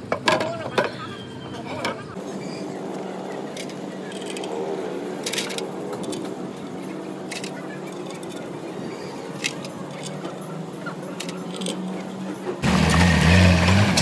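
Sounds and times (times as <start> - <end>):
voices murmuring: 0.1 - 12.6
metallic clicks and clinks: 5.2 - 8.6, 9.3 - 11.9.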